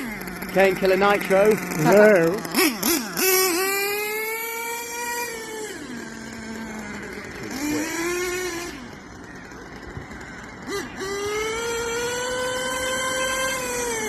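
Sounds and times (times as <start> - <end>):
small engine revving and idling: 0.0 - 14.0.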